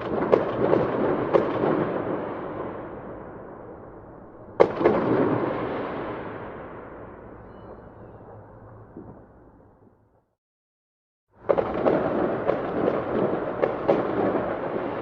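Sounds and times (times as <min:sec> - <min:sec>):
firework bang with echo: 0:04.6 - 0:06.8, 0:11.4 - 0:15.0.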